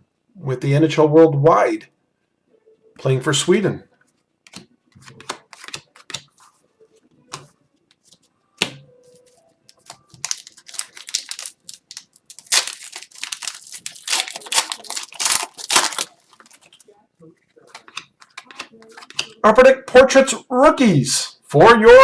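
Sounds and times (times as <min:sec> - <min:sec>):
cards clicking and rustling: 0:04.5 - 0:06.6, 0:07.3 - 0:16.9, 0:17.6 - 0:19.4
wrapper tearing and crinkling: 0:09.7 - 0:16.8.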